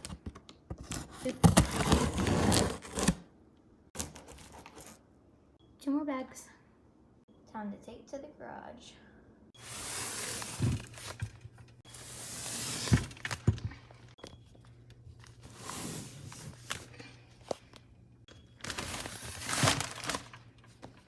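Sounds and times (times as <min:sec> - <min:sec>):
packaging rustling and crinkling: 0:18.6 - 0:20.8.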